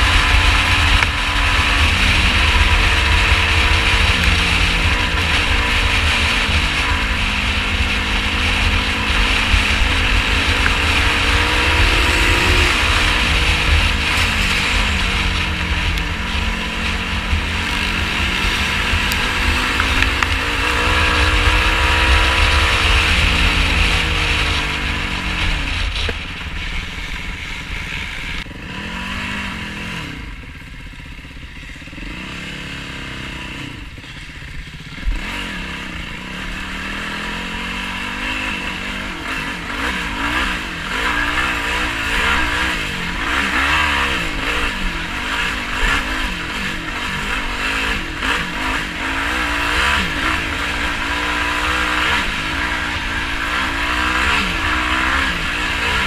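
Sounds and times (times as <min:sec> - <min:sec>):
wind rumble on microphone: 0:00.0 - 0:30.4
quad engine revving: 0:00.0 - 0:56.0.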